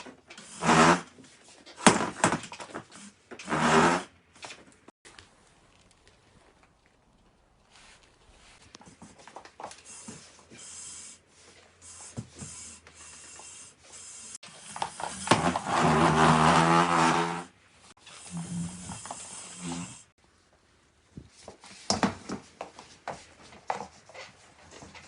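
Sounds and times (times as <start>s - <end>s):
chair legs scraping floor: 14.5s - 17.6s
grinding groan of chair: 14.8s - 17.5s.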